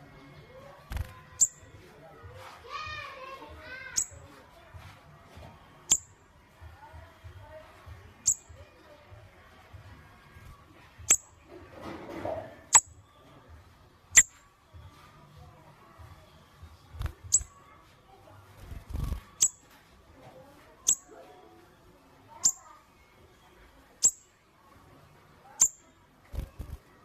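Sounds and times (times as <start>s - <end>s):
sunbird high-pitched chirps: 1.3s - 1.7s, 3.9s - 4.3s, 5.9s - 6.2s, 8.2s - 8.6s, 11.1s - 11.3s, 14.1s - 14.4s, 17.2s - 17.6s, 19.4s - 19.7s, 20.8s - 21.2s, 22.3s - 22.8s, 24.0s - 24.4s, 25.6s - 26.0s.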